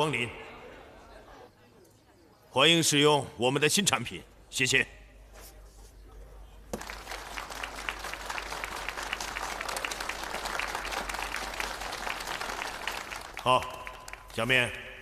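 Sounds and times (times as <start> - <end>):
audience applauding: 6.7 - 14.5.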